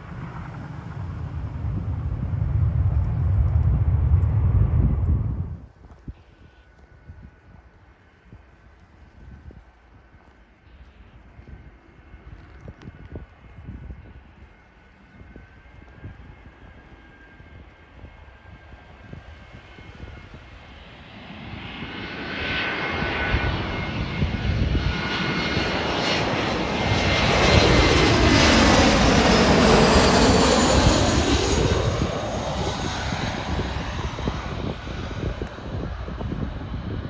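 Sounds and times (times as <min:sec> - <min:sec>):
high engine whine: 0:00.0 - 0:05.6, 0:22.5 - 0:37.0
jet airliner passing: 0:00.0 - 0:05.7, 0:13.4 - 0:37.0.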